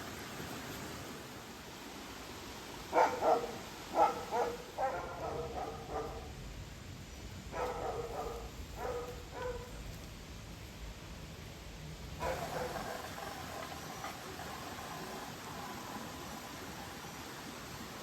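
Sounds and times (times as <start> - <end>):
dog barking: 2.9 - 6.4, 7.5 - 9.8, 12.2 - 13.1.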